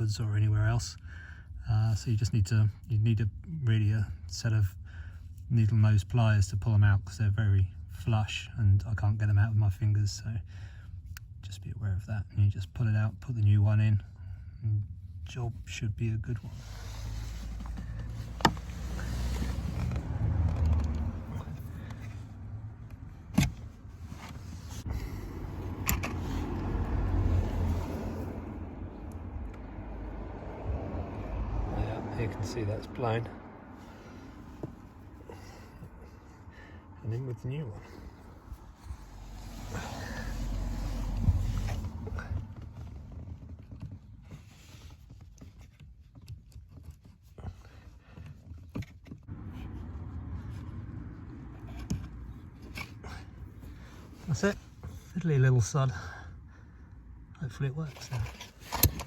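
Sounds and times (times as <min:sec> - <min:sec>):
low rumbling rustle of handling: 0:12.9 - 0:29.9, 0:32.2 - 0:59.0.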